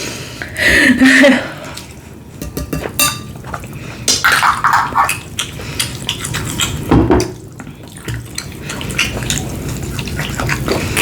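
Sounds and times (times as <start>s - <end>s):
cutlery and dishes clinking: 2.4s - 3.4s
wet chewing: 3.4s - 11.0s.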